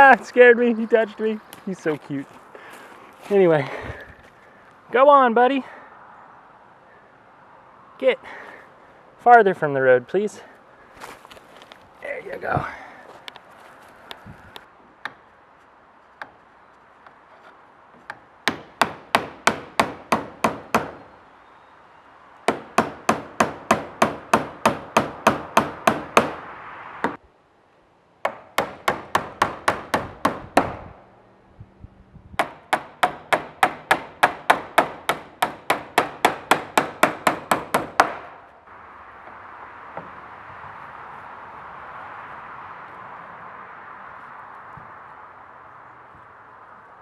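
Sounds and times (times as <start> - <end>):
hammer driving nails into wood: 18.1 - 21.0, 28.2 - 30.9, 32.4 - 38.4.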